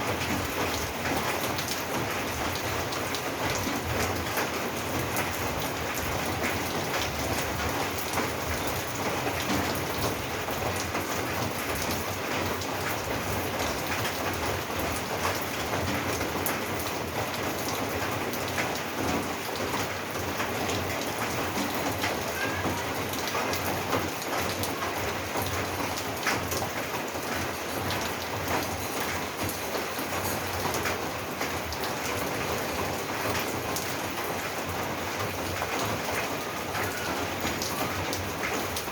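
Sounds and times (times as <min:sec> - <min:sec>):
heavy rain on a roof: 0:00.0 - 0:38.9.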